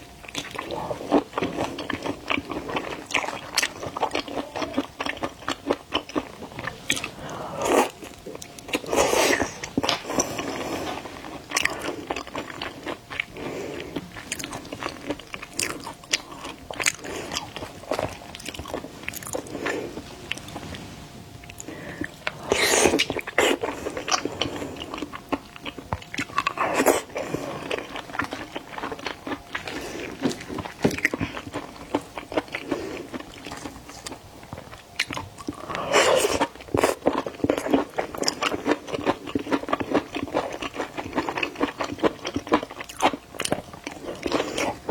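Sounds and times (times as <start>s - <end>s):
biting and chewing seafood: 0.0s - 20.7s, 21.4s - 44.9s.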